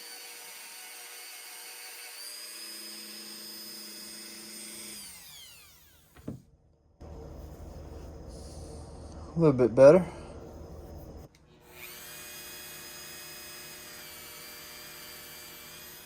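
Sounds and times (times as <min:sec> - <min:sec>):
rotary tool whining: 0:00.0 - 0:06.5, 0:11.2 - 0:16.0.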